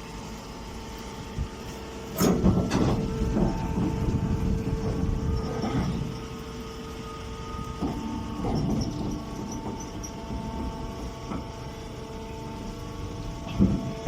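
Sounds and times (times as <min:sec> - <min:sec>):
hay baler humming and rumbling: 0:00.0 - 0:14.0
machine clunks: 0:02.1 - 0:04.2.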